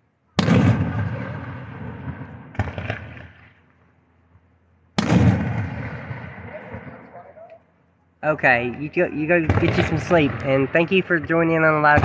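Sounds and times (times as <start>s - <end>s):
fireworks exploding: 0.4s - 3.6s, 5.0s - 7.5s, 8.7s - 12.0s.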